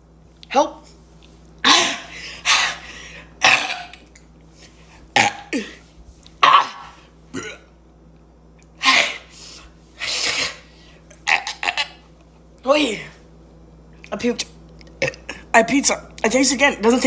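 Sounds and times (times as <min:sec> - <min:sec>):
woman coughing and retching: 0:01.6 - 0:02.8, 0:03.4 - 0:04.1, 0:05.2 - 0:05.8, 0:06.4 - 0:07.7, 0:10.0 - 0:12.0, 0:15.0 - 0:15.4.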